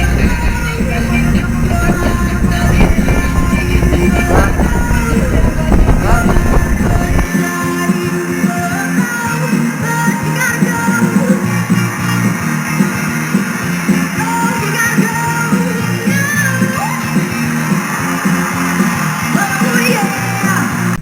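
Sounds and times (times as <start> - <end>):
guitar: 0.0 - 21.0
person singing: 0.0 - 21.0
steady drum beat: 0.0 - 21.0.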